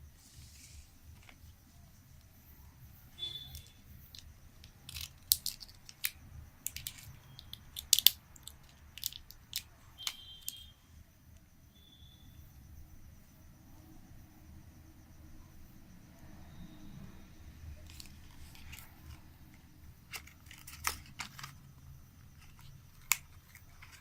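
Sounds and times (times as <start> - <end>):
hands handling smartphone: 0.2 - 1.6, 3.2 - 10.7, 17.8 - 24.0.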